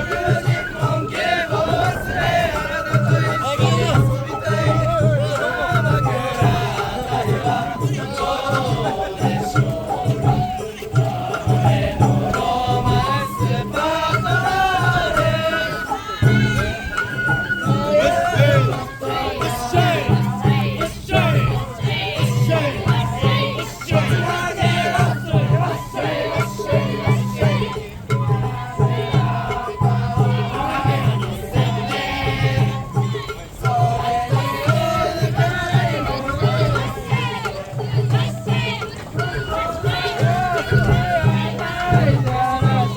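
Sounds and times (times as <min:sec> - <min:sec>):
bamboo flute melody: 0:00.0 - 0:42.9
festival drums beating: 0:00.0 - 0:42.9.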